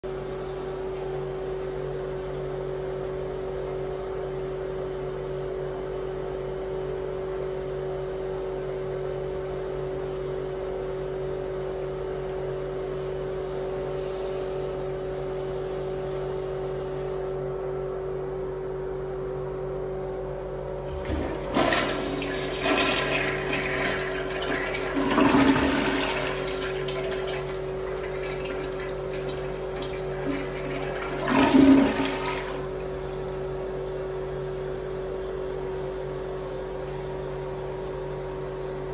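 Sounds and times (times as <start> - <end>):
steady hum: 9.3 - 38.9
toilet flushing water rush: 20.9 - 33.5.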